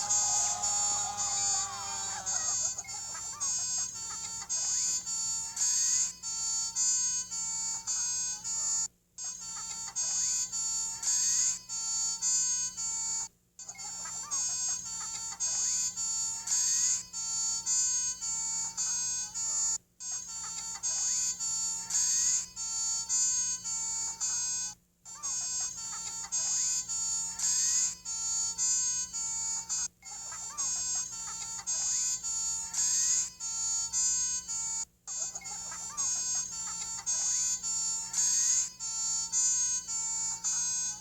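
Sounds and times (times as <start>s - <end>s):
car alarm siren: 0.0s - 3.4s.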